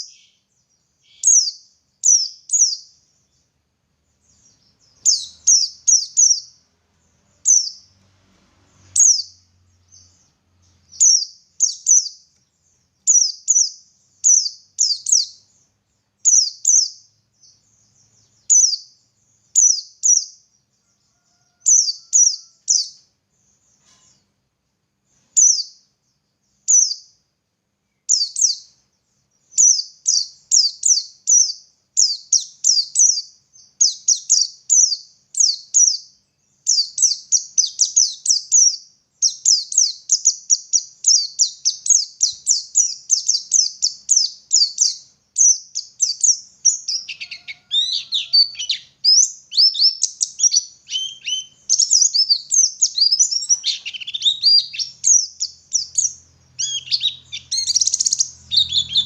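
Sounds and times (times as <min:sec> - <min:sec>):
small bird singing high notes: 0:00.0 - 0:03.0, 0:04.3 - 0:06.6, 0:07.3 - 0:08.0, 0:08.8 - 0:12.3, 0:13.0 - 0:15.6, 0:16.2 - 0:20.4, 0:25.4 - 0:25.8, 0:28.1 - 0:28.8, 0:29.5 - 0:36.1, 0:36.7 - 0:59.0.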